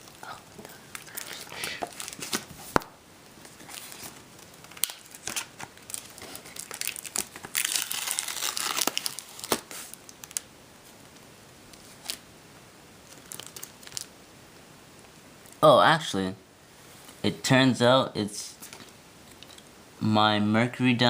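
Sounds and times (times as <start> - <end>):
packaging crinkling and tearing: 0.0 - 2.8, 3.4 - 10.5, 11.8 - 12.2, 13.0 - 14.1.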